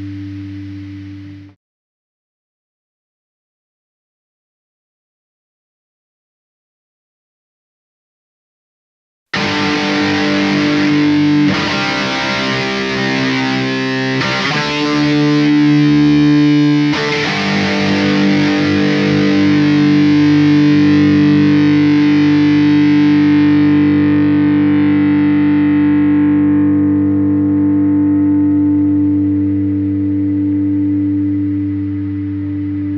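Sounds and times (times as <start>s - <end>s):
distorted electric guitar chords: 0.0s - 1.6s, 9.4s - 32.9s.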